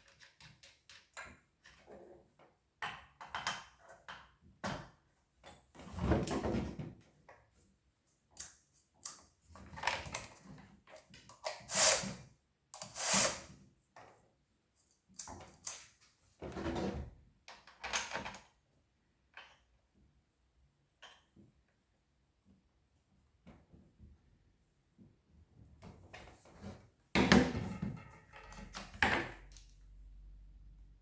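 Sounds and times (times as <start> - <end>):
objects knocking and scraping: 26.0 - 29.8.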